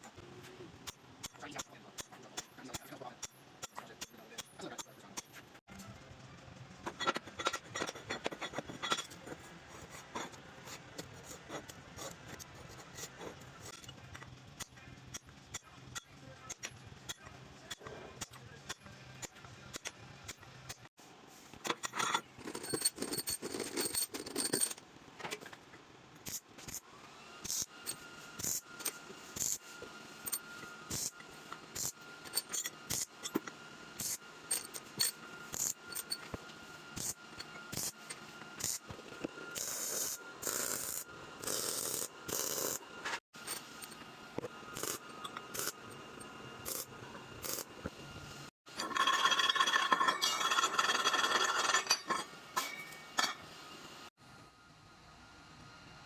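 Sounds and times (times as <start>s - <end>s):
metal clinking and scraping: 6.8s - 14.3s, 21.6s - 26.8s, 27.5s - 47.8s, 48.7s - 53.6s.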